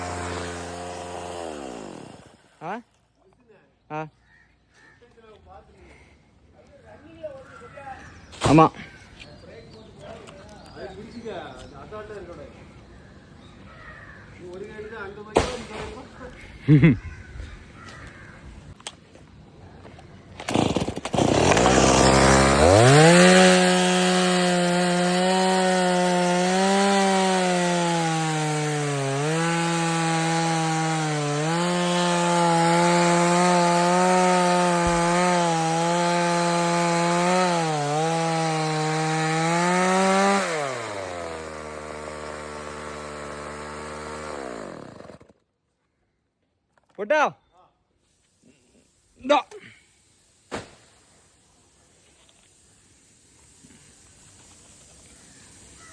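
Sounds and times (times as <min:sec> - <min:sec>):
chainsaw cutting wood: 0:00.0 - 0:02.8, 0:20.4 - 0:45.5.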